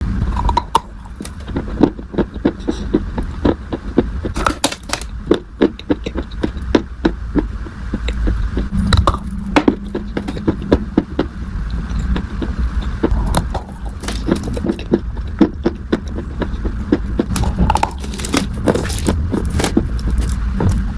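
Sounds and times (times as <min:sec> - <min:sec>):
faint low hum: 0:00.0 - 0:20.9
dried clay crunching: 0:07.4 - 0:20.9.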